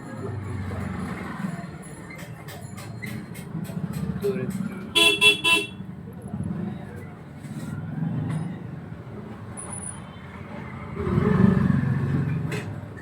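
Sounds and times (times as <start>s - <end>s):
passing vehicle engine rumble: 5.8s - 13.0s.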